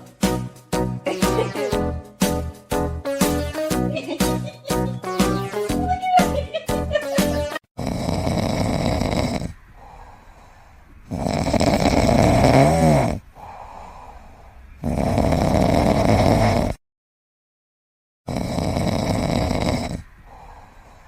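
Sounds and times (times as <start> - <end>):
pet snoring: 7.8 - 9.6, 11.1 - 13.7, 14.8 - 16.8, 18.3 - 20.6
quiet breaths: 7.8 - 12.4, 13.1 - 16.8, 18.5 - 21.0
wavering whistle in snore: 18.3 - 20.5.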